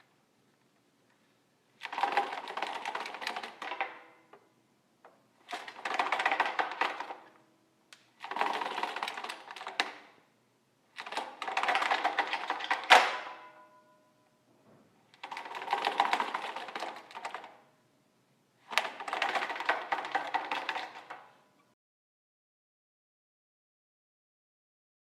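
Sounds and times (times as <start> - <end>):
projector screen roller rattling: 1.8 - 4.2, 5.4 - 7.3, 8.2 - 10.0, 11.0 - 13.4, 15.2 - 17.6, 18.7 - 21.4.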